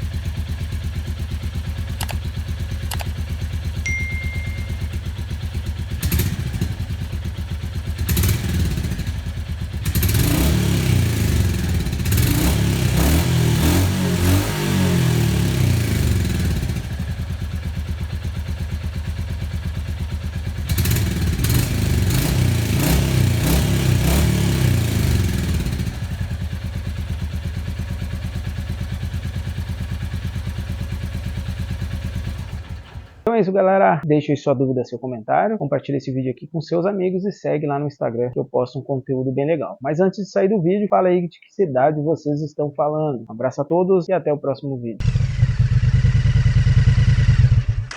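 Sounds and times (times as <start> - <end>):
motorcycle engine idling and revving: 0.0 - 33.3, 45.0 - 47.9.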